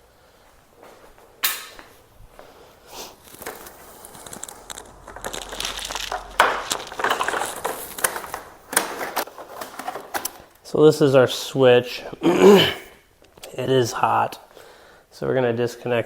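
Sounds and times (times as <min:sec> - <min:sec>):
plastic crinkling rustle: 0:02.0 - 0:10.8
plastic panels clicking: 0:07.0 - 0:10.6.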